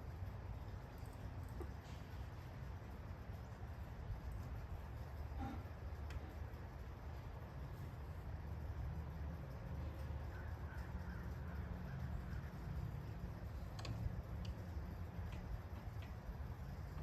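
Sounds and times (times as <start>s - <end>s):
low steady rumble: 0.0s - 17.0s
faint bird calls: 9.9s - 13.1s
light clicks: 13.4s - 16.3s.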